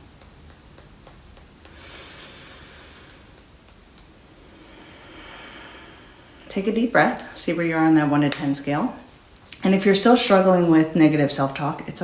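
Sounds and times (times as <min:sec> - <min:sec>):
fingertips tapping on body: 0:00.0 - 0:04.4
soft breath: 0:01.7 - 0:03.5, 0:04.2 - 0:07.4.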